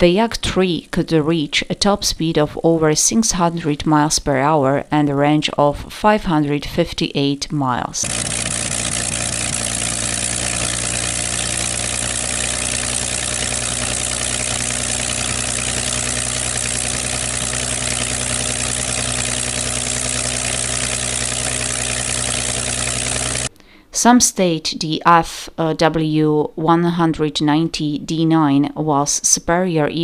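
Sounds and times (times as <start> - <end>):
piston aircraft engine running: 8.0 - 23.5.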